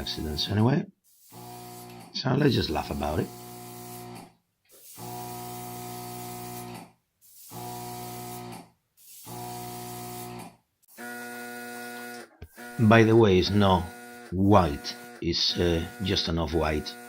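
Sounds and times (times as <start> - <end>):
spray hissing: 0.0 - 2.0, 2.6 - 10.4.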